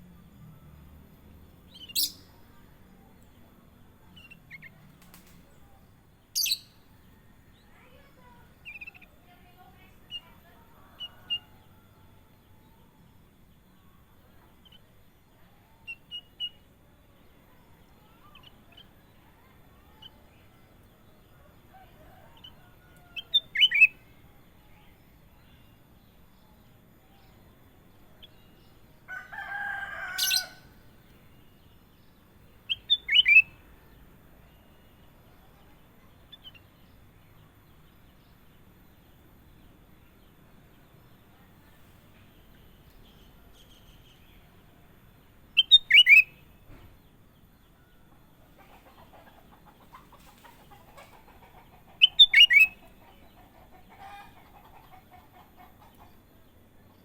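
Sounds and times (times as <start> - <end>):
harsh bird call: 29.4 - 30.8
bird chirping and whistling: 32.7 - 33.5, 45.6 - 46.3, 52.0 - 52.8.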